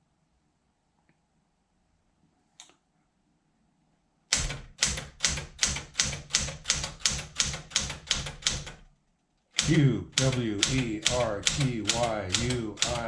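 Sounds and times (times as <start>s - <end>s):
faint click: 2.5s - 2.8s
manual typewriter keys striking: 4.3s - 8.9s, 9.6s - 13.0s.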